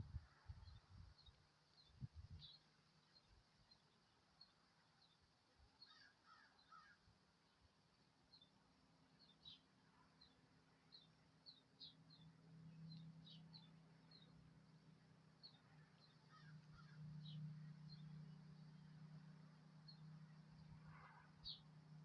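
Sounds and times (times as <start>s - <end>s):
small bird chirping: 0.2s - 5.2s, 5.8s - 7.0s, 9.2s - 14.4s, 15.4s - 18.9s, 19.8s - 21.8s.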